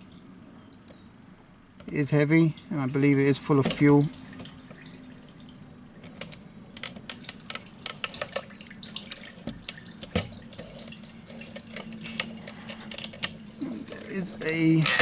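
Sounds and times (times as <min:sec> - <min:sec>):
fuel dripping and trickling: 0:01.7 - 0:15.0
small clicks: 0:06.0 - 0:10.3, 0:10.9 - 0:13.4.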